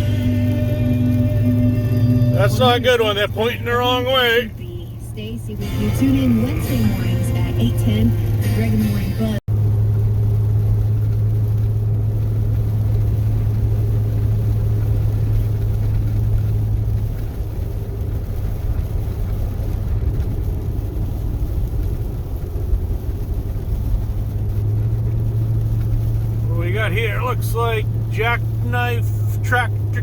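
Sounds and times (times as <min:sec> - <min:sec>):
low engine drone: 0:00.0 - 0:30.0
road noise: 0:00.0 - 0:30.0.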